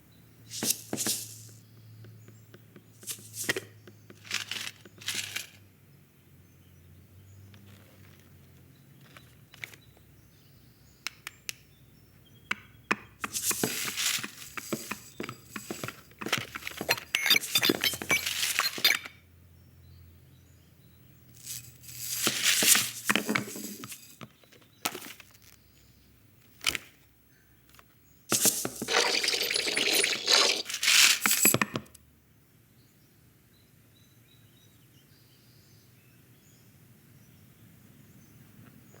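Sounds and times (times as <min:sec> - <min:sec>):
scratchy rustling noise: 0:21.4 - 0:24.2, 0:28.3 - 0:31.5.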